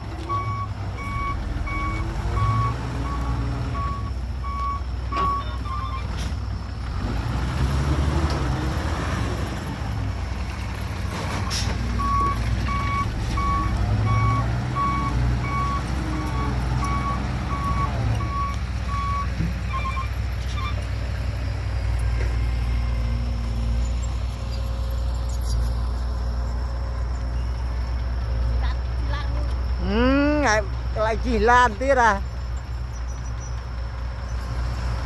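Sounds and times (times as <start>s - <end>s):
diesel truck engine running: 0.0s - 35.0s
reversing alarm beeps: 0.3s - 6.1s, 12.0s - 20.8s.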